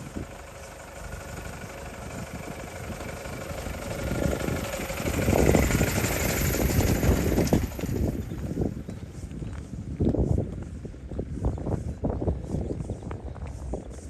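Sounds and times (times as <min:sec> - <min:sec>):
vehicle engine passing by: 0:00.0 - 0:09.2.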